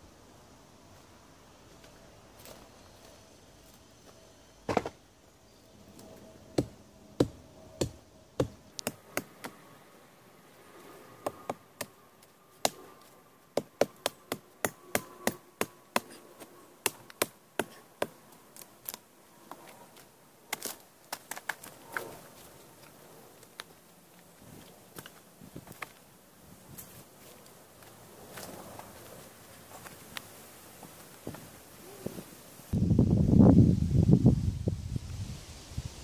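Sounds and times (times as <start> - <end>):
chopping into tree stump: 4.7 - 5.0.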